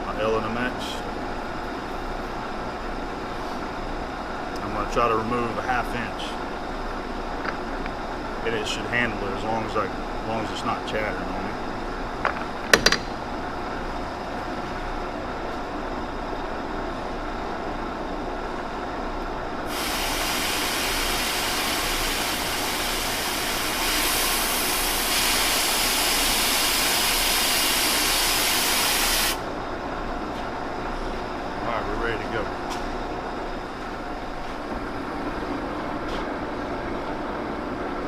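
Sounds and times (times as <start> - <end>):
machine shop hum: 0.0 - 38.0
loud hiss of escaping air: 19.7 - 29.4.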